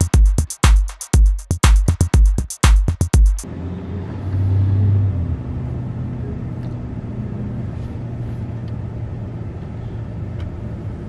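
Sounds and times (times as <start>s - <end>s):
vehicle engine rumble: 3.4s - 11.0s.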